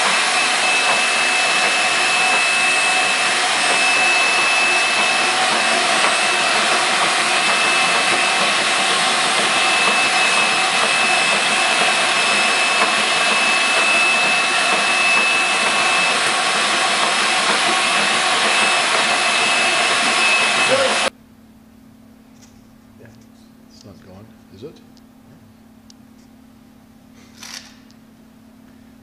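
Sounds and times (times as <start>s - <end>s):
floor grinder and vacuum running: 0.0s - 21.1s.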